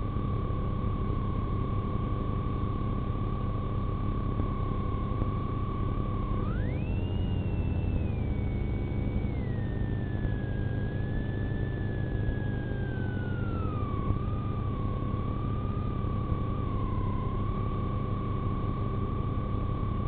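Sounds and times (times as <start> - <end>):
siren gliding downward: 6.1 - 18.6.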